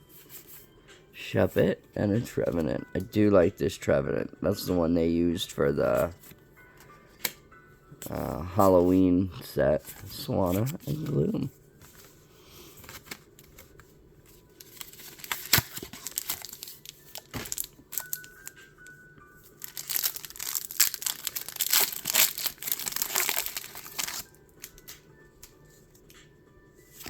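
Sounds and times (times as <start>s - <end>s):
faint background music: 0.0s - 27.0s
foil wrapper crinkling and tearing: 14.5s - 18.6s, 19.6s - 25.0s.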